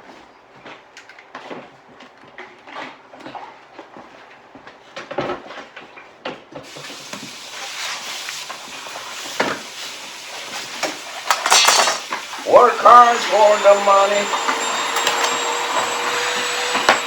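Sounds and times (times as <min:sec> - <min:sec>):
steady hiss: 0:06.7 - 0:17.0.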